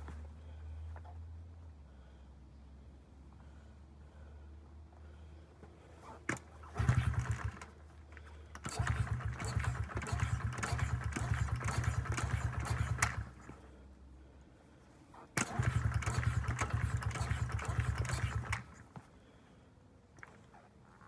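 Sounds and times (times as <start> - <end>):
small motorcycle engine running: 6.6 - 7.8, 8.6 - 13.6, 15.4 - 18.8.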